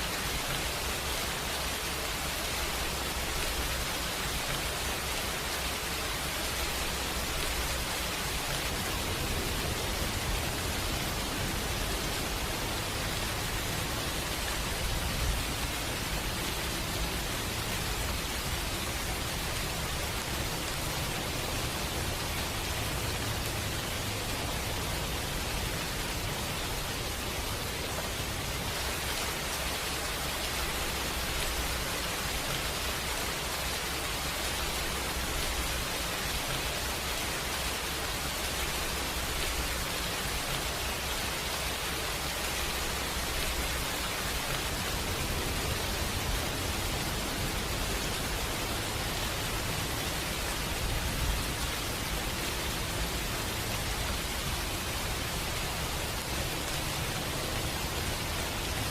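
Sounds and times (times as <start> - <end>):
steady rain hissing: 0.0 - 58.9.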